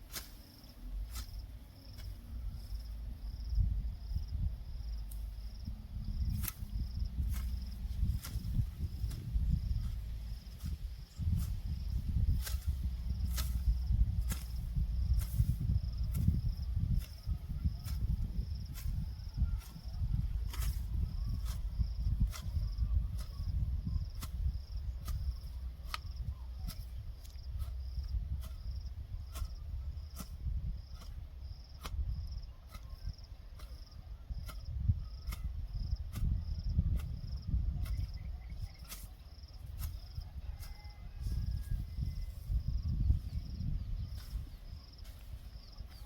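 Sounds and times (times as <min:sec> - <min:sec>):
insects chirping: 0:00.0 - 0:46.0
low rumble: 0:00.8 - 0:32.4.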